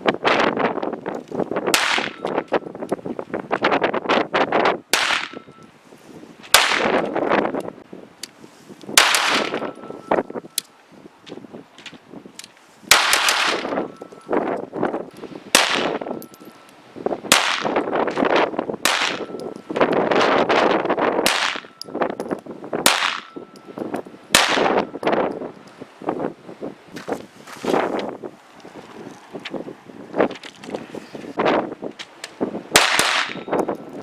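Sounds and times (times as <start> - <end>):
faint ringing tone: 9.6 - 10.6.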